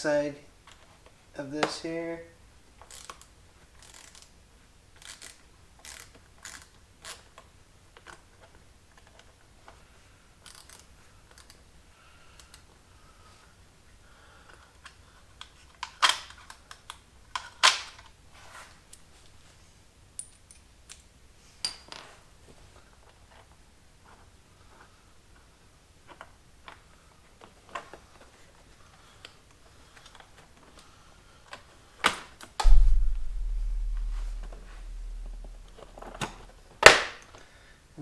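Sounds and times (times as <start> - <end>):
loud low hum: 32.6 - 36.4.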